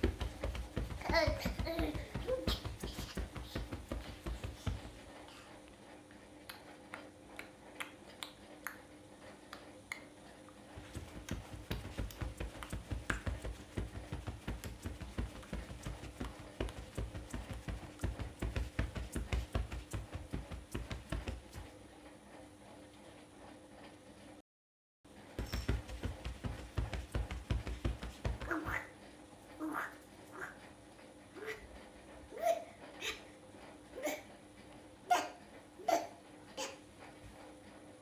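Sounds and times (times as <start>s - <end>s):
baby tapping and knocking: 0.0s - 5.0s, 10.8s - 21.7s, 25.4s - 28.7s.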